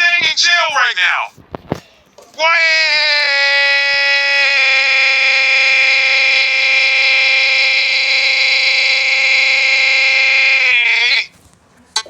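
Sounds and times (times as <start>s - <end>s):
person shouting a long high note: 2.4s - 11.3s.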